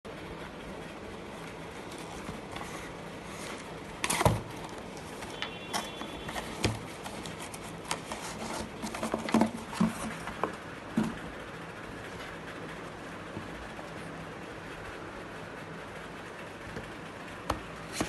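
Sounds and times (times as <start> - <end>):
steady low hum: 0.1 - 18.0
packaging rustling: 1.8 - 10.5.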